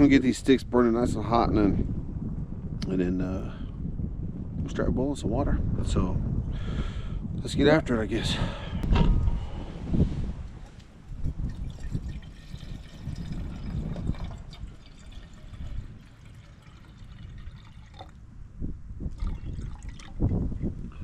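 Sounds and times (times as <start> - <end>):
low uneven rumble: 0.0 - 21.0
water pouring into a can: 11.2 - 18.2, 19.1 - 20.3.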